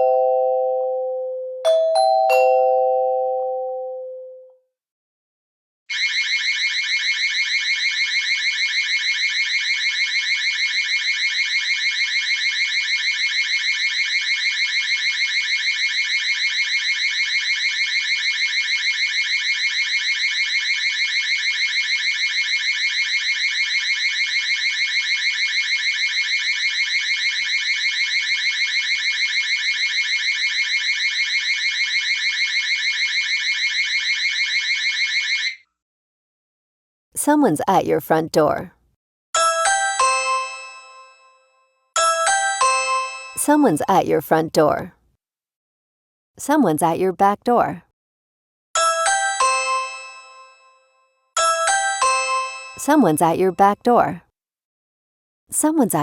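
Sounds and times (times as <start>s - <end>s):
shrill electronic alarm pulsing: 5.9s - 35.6s.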